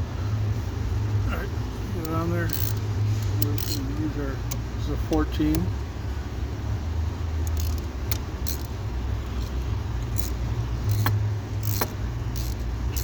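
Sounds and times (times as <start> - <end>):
sharp metallic wrench clicks: 1.9 - 5.8, 7.4 - 13.0.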